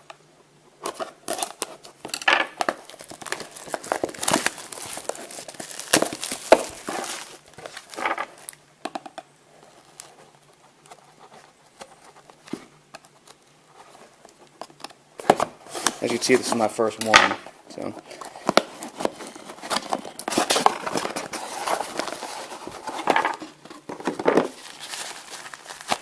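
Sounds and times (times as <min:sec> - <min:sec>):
plastic wrapping tearing and crinkling: 0:00.9 - 0:08.6, 0:17.8 - 0:26.0.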